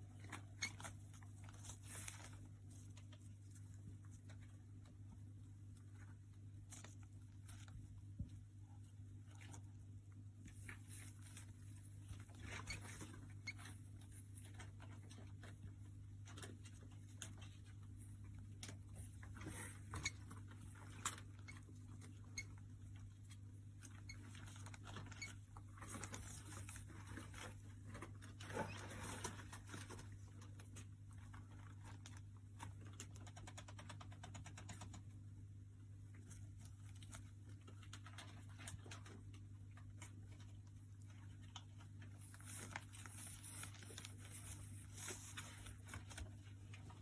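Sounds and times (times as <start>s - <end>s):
rat scratching and tapping: 10.4s - 35.2s.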